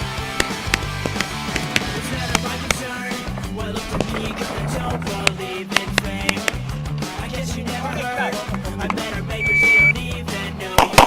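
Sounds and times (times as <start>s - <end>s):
background music with beat: 0.0s - 11.0s
shot timer beep: 9.4s - 10.0s.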